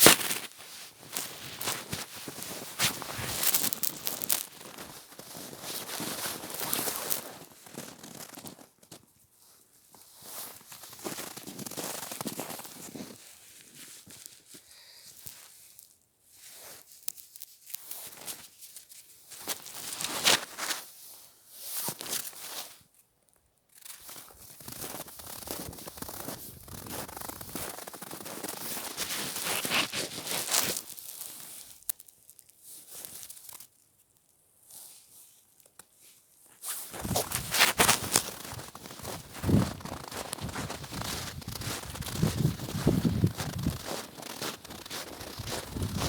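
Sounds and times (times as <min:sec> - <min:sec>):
footsteps crunching in snow: 0:00.0 - 0:14.6, 0:24.0 - 0:31.8, 0:36.5 - 0:46.0.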